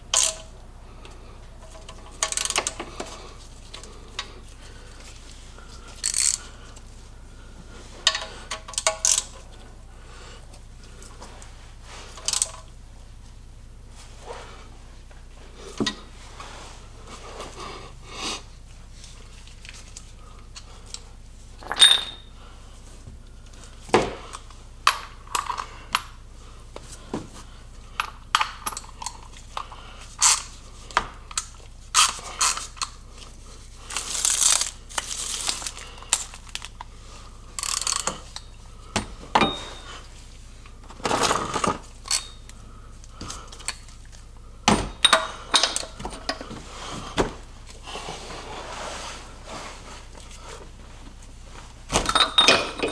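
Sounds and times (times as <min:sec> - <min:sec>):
metallic clicks of hand tools: 0:00.1 - 0:00.5, 0:08.1 - 0:09.3
scraping noises: 0:47.8 - 0:50.1.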